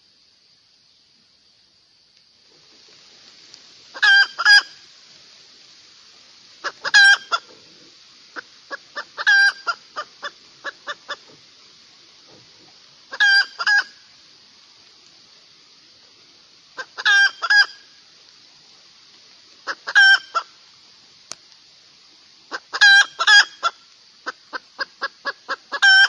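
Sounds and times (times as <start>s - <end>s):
hen cackling: 3.9s - 4.8s, 6.6s - 7.6s, 8.3s - 11.4s, 13.0s - 14.1s, 16.8s - 17.9s, 19.6s - 20.6s, 22.5s - 26.0s.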